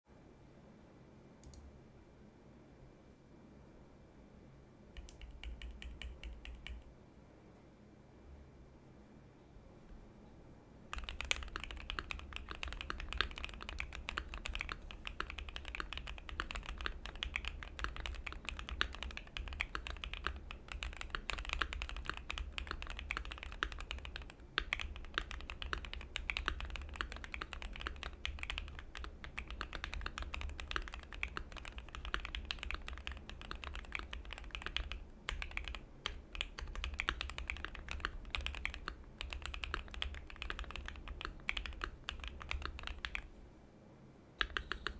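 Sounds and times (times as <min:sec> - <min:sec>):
fast typing on mechanical keyboard: 0:05.0 - 0:06.8, 0:10.9 - 0:43.3, 0:44.4 - 0:44.9.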